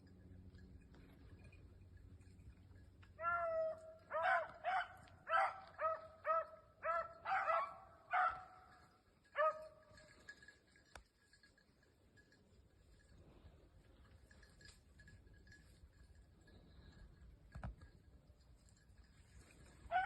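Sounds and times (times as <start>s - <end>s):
dog baying: 3.2s - 9.8s.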